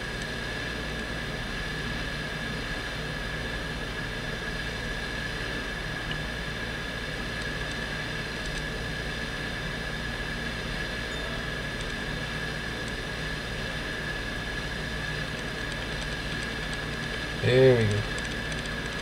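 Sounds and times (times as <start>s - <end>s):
background hiss and hum: 0.0s - 19.0s
high whine: 10.8s - 14.6s, 17.1s - 18.6s.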